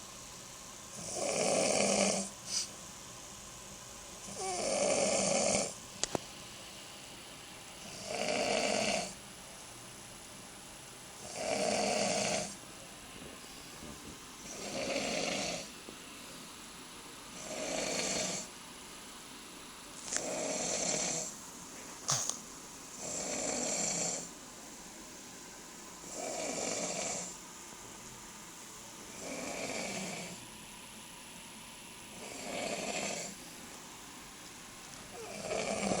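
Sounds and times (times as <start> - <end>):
man snoring: 1.0 - 2.3, 4.3 - 5.8, 7.8 - 9.2, 11.2 - 12.6, 14.4 - 15.7, 17.4 - 18.5, 20.2 - 21.3, 23.0 - 24.3, 26.1 - 27.4, 29.2 - 30.4, 32.1 - 33.4, 35.1 - 36.0
quiet breathing: 1.0 - 2.9, 29.0 - 30.5, 35.0 - 36.0.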